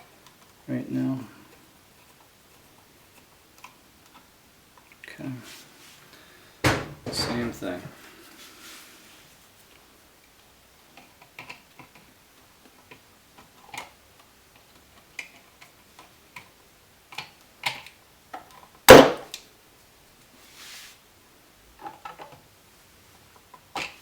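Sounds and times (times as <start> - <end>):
loud knock: 6.6 - 7.4.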